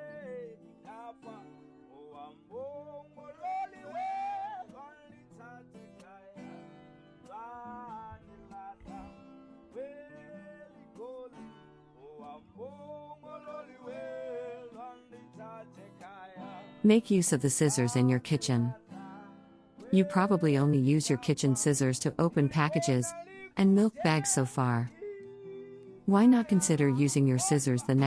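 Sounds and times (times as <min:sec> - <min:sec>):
acoustic guitar: 0:00.0 - 0:28.0
person singing: 0:16.4 - 0:19.2, 0:19.9 - 0:28.0.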